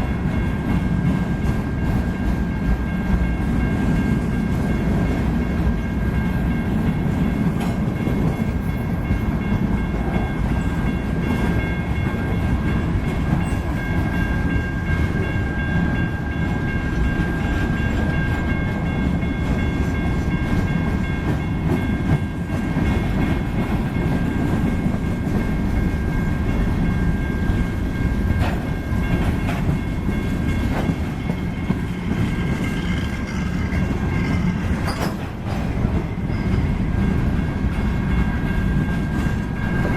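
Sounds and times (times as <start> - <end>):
train wheels rumbling on rails: 0.0 - 39.9
wheels clacking over rail joints: 6.5 - 15.3, 15.9 - 39.9.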